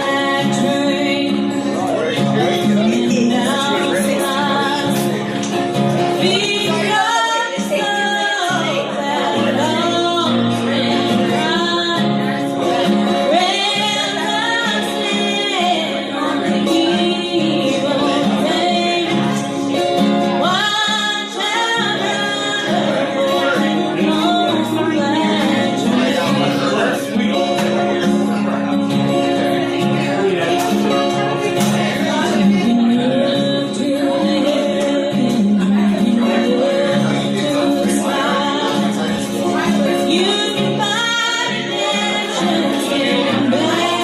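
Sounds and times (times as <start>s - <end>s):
woman singing: 0.0s - 27.0s, 31.5s - 44.0s
acoustic guitar: 0.0s - 44.0s.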